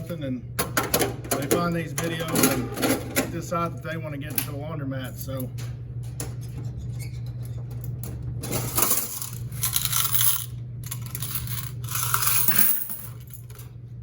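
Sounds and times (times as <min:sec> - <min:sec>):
coins clattering and jingling: 0:08.4 - 0:13.7.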